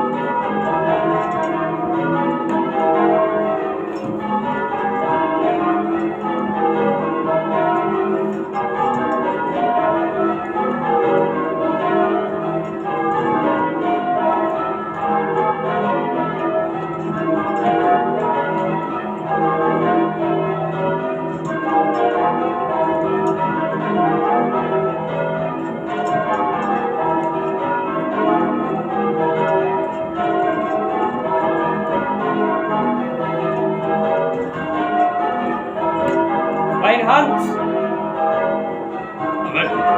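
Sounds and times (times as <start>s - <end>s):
church bells change ringing: 0.0s - 39.9s.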